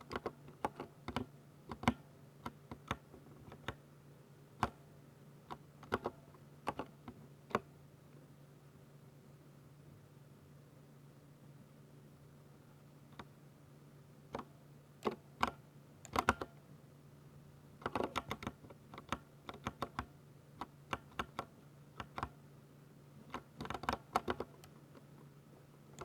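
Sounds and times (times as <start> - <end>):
mechanical keyboard typing: 0.0 - 3.8, 5.8 - 6.9, 14.4 - 16.6, 17.8 - 22.3, 23.3 - 24.7.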